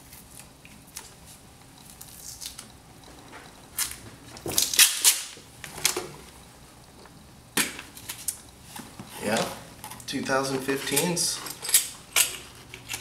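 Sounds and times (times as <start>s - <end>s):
tape tearing and peeling: 4.6s - 5.4s.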